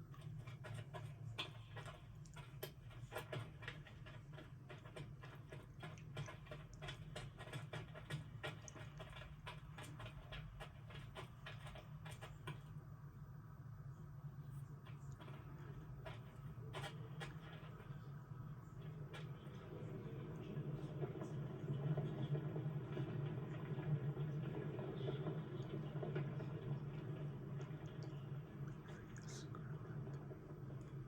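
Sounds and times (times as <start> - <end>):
rapid light clicking and tapping: 0.0 - 12.9
steady low hum: 23.6 - 31.0.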